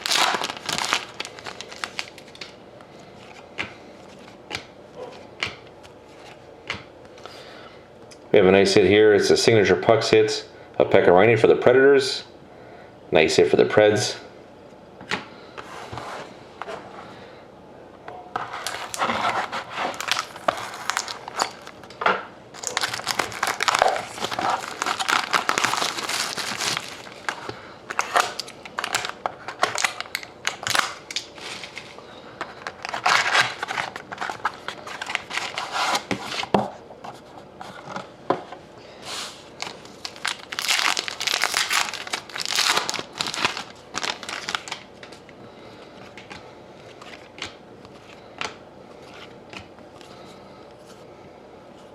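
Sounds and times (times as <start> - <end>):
card pack wrappers crinkling: 0.0 - 2.6, 18.5 - 36.5, 39.5 - 45.3.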